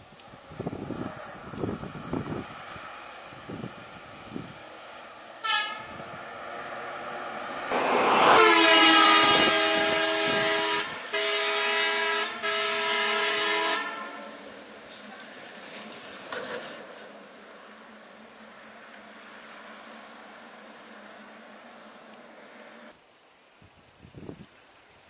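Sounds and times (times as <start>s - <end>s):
bus horn: 5.4s - 6.1s, 8.1s - 14.4s.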